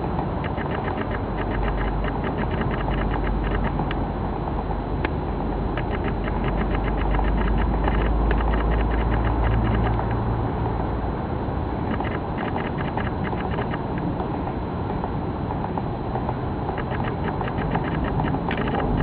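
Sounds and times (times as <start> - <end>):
woodpecker pecking at bark: 0.4 - 3.8, 5.8 - 10.2, 11.9 - 14.0, 16.8 - 19.0.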